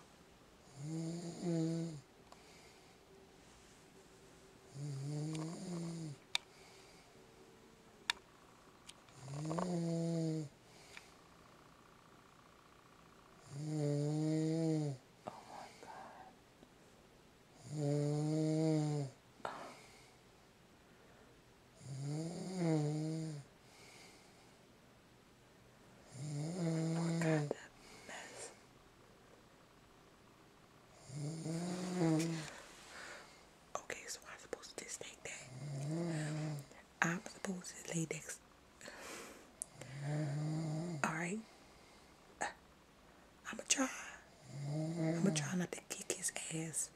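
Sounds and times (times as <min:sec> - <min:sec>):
man snoring: 0:00.6 - 0:02.0, 0:04.7 - 0:06.2, 0:09.2 - 0:10.5, 0:13.4 - 0:15.0, 0:17.6 - 0:19.8, 0:21.8 - 0:24.0, 0:26.1 - 0:27.5, 0:31.0 - 0:32.5, 0:35.5 - 0:36.7, 0:39.7 - 0:41.0, 0:44.4 - 0:45.4.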